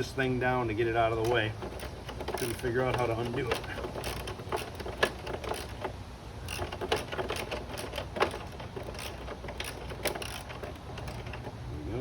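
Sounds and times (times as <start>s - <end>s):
wrench clicking on metal bolts: 0.9s - 11.5s.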